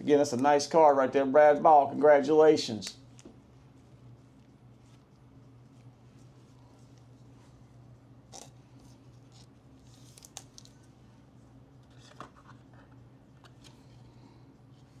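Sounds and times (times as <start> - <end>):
steady low hum: 0.0 - 15.0
cards and packaging rustling: 8.3 - 10.8.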